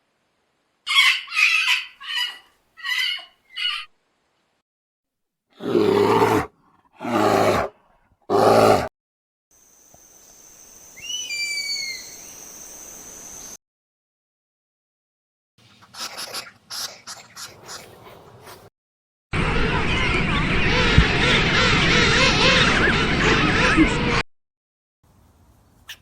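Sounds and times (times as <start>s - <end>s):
high raspy animal calls: 0.9s - 3.9s, 5.6s - 8.9s, 15.9s - 18.7s
loud deep animal calls: 5.6s - 7.7s, 8.3s - 8.9s.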